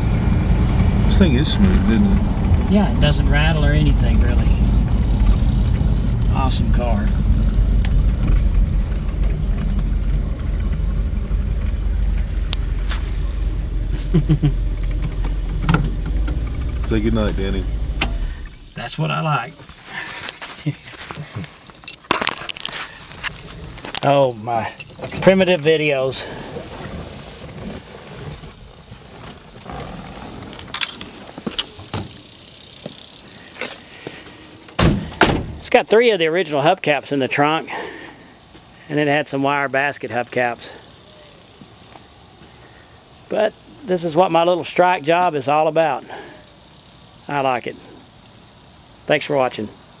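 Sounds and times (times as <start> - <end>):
faint low rumble: 0.0 - 19.8
car engine and road rumble: 0.0 - 50.0.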